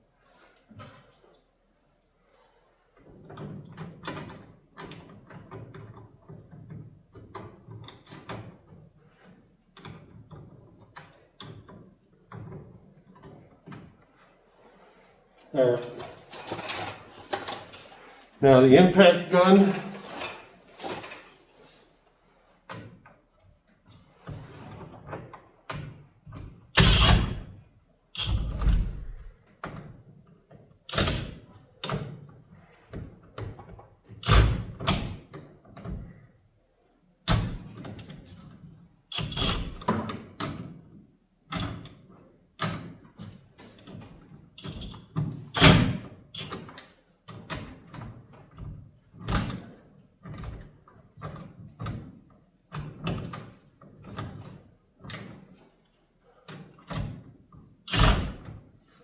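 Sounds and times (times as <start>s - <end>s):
heavy metal thuds: 28.2s - 29.4s.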